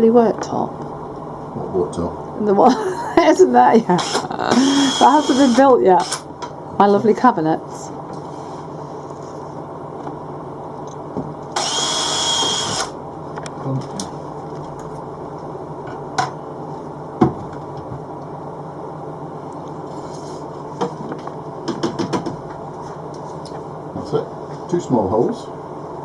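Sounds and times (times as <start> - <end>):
power drill whining: 4.0 - 6.2, 11.6 - 13.0.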